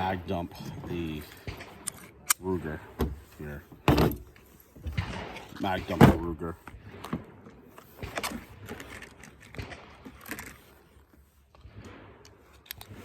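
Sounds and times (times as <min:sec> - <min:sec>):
gear clicking and scraping: 0:07.8 - 0:13.0.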